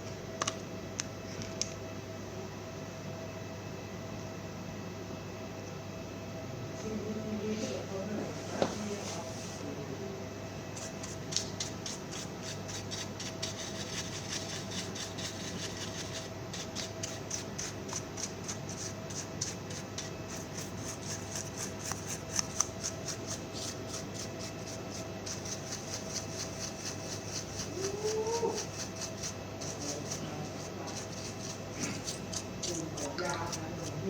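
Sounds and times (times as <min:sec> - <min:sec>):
electrical hum with whine: 0:00.0 - 0:34.0
scratchy strokes: 0:10.8 - 0:34.0.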